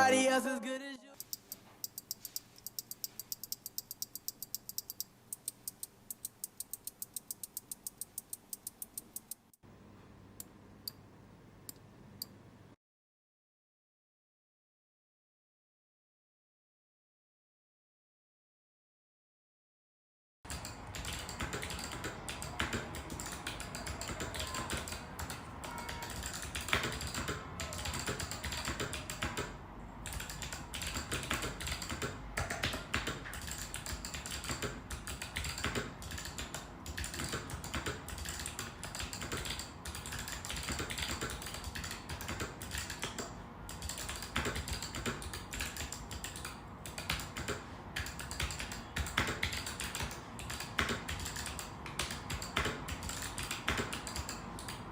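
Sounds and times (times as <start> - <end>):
mechanical keyboard typing: 1.2 - 9.6, 20.5 - 54.9.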